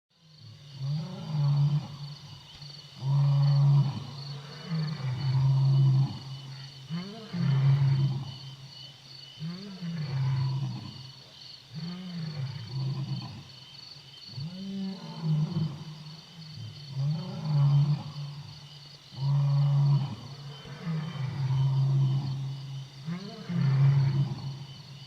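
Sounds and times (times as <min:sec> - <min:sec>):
lion roaring: 0:16.9 - 0:18.4, 0:19.1 - 0:24.6.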